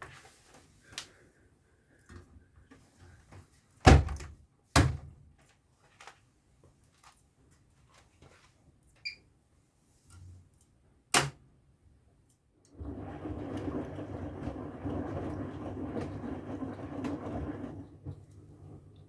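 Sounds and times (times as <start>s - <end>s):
washing machine rushing and humming: 12.7s - 19.0s.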